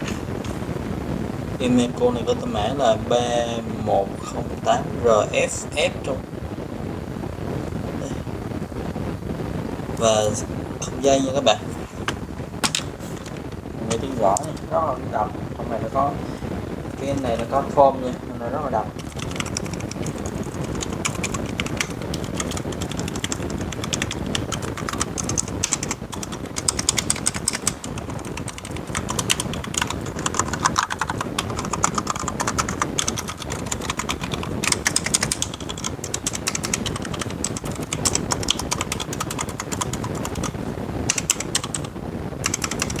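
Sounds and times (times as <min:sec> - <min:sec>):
mechanical keyboard typing: 0:19.0 - 0:43.0.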